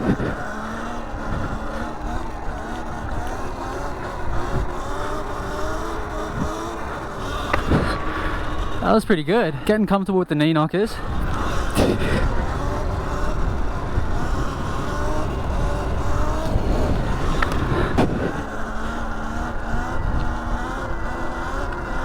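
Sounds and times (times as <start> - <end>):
electric motorbike motor whining: 0.0 - 9.9, 10.9 - 22.0.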